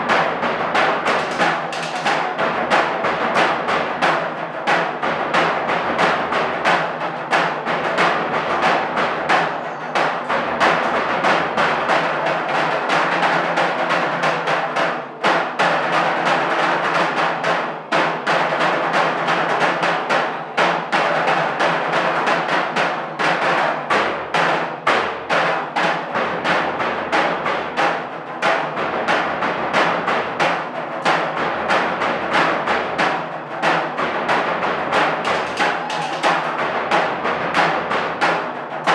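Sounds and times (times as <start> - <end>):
drum ensemble playing: 26.3 - 38.9.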